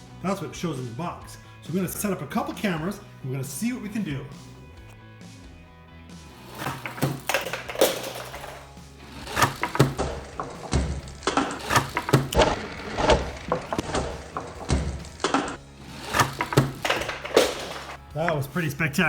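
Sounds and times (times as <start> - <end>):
plastic pieces clattering: 6.3 - 18.0.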